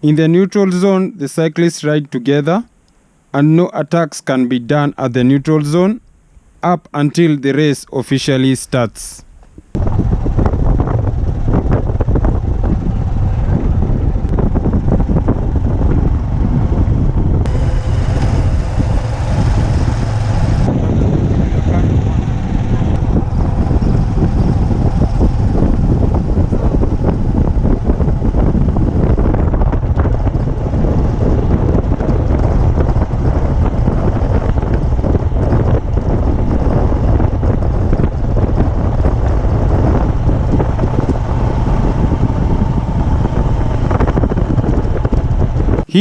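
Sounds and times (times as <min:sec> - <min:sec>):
wind buffeting microphone: 0:09.5 - 0:46.0.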